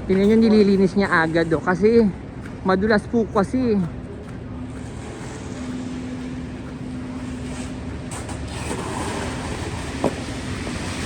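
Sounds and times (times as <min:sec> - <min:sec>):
motor humming: 0:03.8 - 0:11.0.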